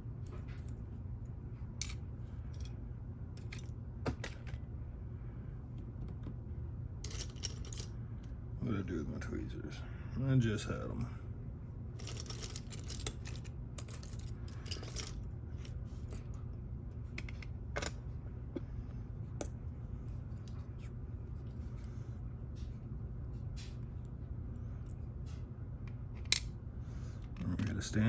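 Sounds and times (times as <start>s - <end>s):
steady low hum: 0.0s - 28.0s
metal parts clicking and clinking: 1.8s - 2.8s, 3.4s - 3.7s, 7.0s - 7.9s, 12.0s - 16.4s.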